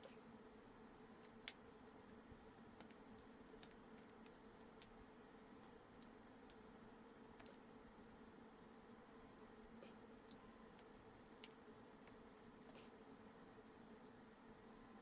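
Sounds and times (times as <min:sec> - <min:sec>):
low steady hum: 0:00.0 - 0:15.0
faint small clicks: 0:01.2 - 0:02.2, 0:02.8 - 0:05.0, 0:05.6 - 0:06.7, 0:07.4 - 0:07.6.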